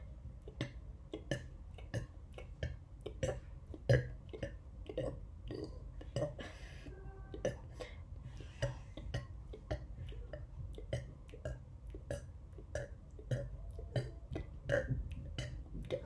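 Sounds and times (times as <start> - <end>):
person burping: 3.1 - 6.6, 11.0 - 16.0.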